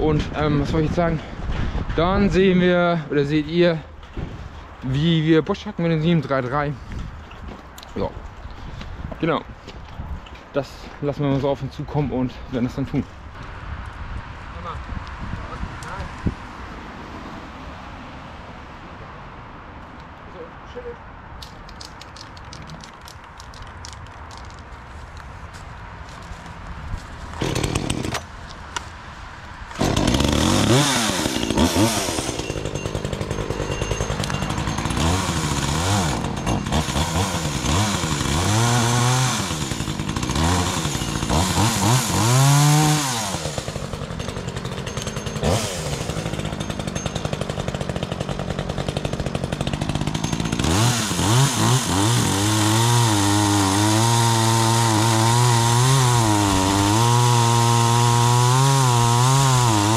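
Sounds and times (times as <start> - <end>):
chainsaw cutting branches: 27.3 - 28.4, 29.7 - 59.9
chainsaw engine revving: 27.4 - 28.3, 29.8 - 59.9.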